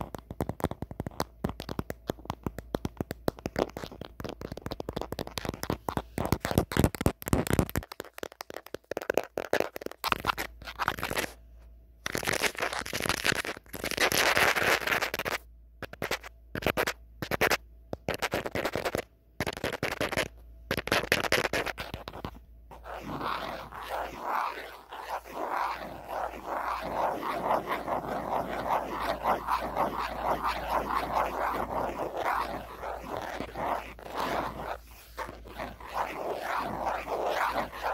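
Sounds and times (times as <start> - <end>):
fingernails scratching on phone: 9.5 - 11.4, 12.1 - 37.9.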